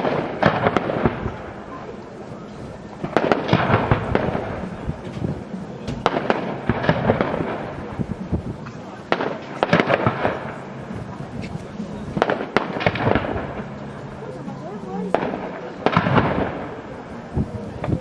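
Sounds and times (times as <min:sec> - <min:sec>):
fireworks banging and crackling: 0:00.0 - 0:18.0.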